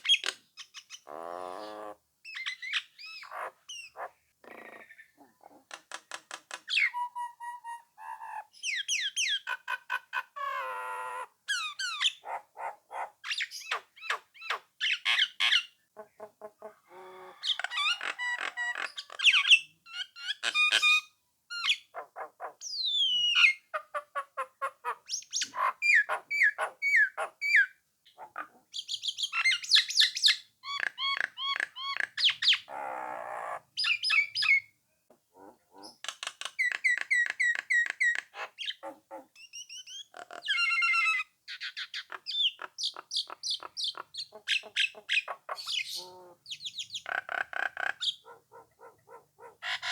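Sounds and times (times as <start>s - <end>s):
starling singing: 33.8s - 34.7s, 35.4s - 49.9s.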